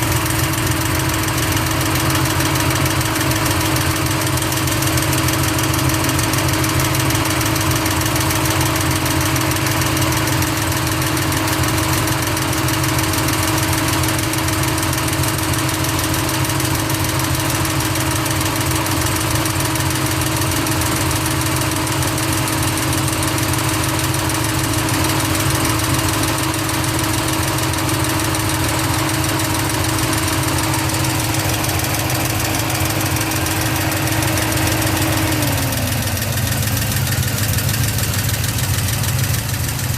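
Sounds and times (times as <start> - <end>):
car engine idling: 0.0 - 39.9
valvetrain ticking: 13.3 - 39.9.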